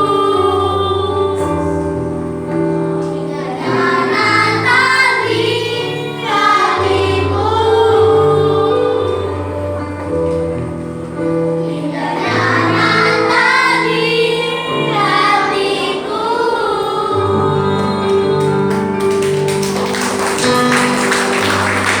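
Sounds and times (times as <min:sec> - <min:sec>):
children singing: 0:00.0 - 0:02.0, 0:03.0 - 0:10.2, 0:11.4 - 0:19.0
musical accompaniment: 0:00.0 - 0:22.0.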